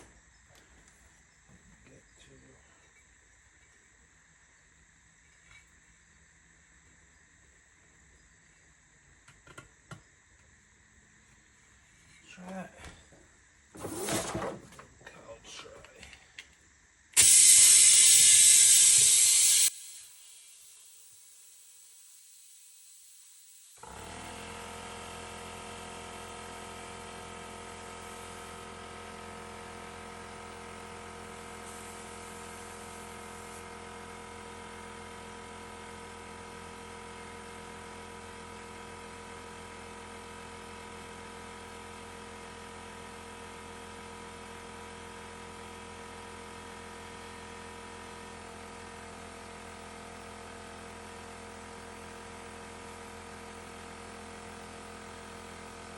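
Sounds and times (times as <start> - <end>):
steady mechanical hum: 0.0 - 21.1.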